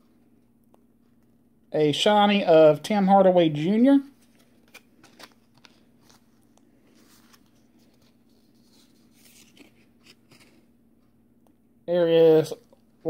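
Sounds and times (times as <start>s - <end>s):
low steady hum: 0.0s - 13.0s
cards flipping with soft clicks: 4.2s - 11.2s.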